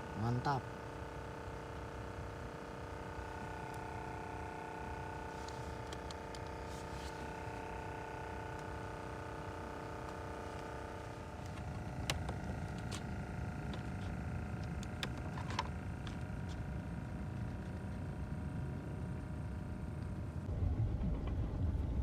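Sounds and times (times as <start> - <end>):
motor humming: 0.0 - 20.5
low rumble: 20.5 - 22.0.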